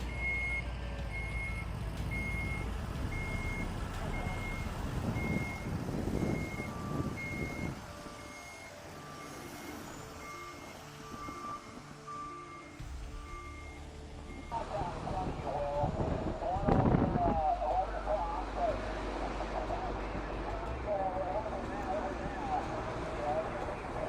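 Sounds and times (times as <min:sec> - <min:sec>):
lower-pitched reversing alarm: 0:00.0 - 0:15.4
reversing alarm beeping: 0:00.0 - 0:15.7
rough engine rumble: 0:00.0 - 0:24.0.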